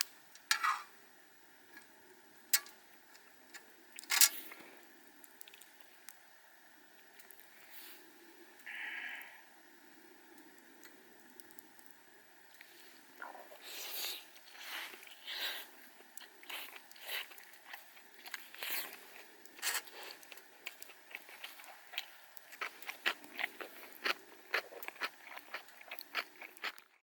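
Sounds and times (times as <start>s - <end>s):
crunching and crackling: 12.5s - 27.0s.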